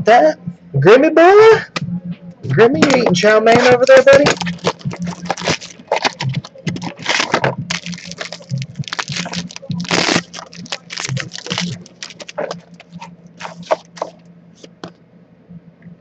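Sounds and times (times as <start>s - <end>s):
cards and wrapper crinkling: 3.6s - 14.9s.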